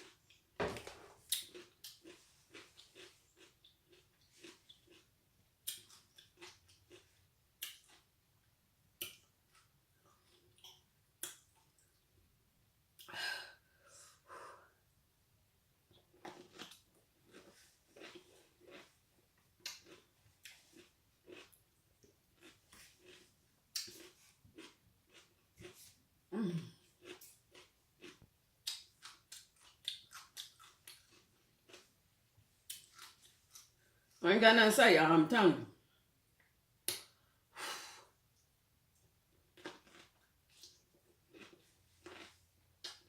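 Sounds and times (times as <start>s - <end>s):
person chewing crunchy food: 1.2s - 8.1s, 15.9s - 31.9s, 32.6s - 34.1s, 39.5s - 43.0s.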